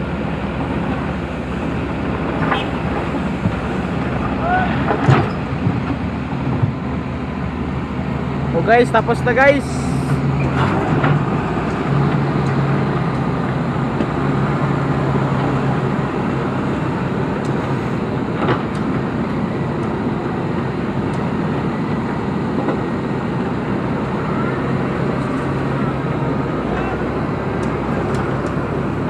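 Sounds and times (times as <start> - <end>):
diesel engine running: 0.0 - 29.0.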